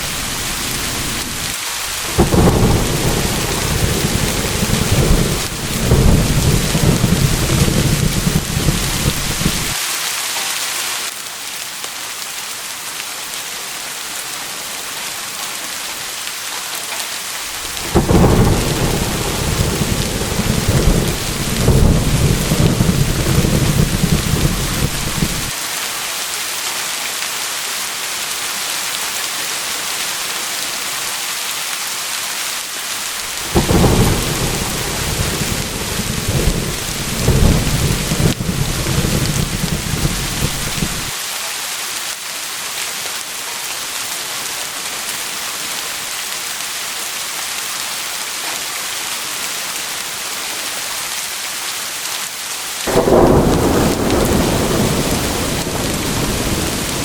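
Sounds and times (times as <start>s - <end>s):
rolling thunder: 0.0s - 9.8s, 17.5s - 25.5s, 33.2s - 41.2s, 52.9s - 57.0s
heavy rain hissing: 0.0s - 11.8s, 17.1s - 48.2s, 52.6s - 57.0s.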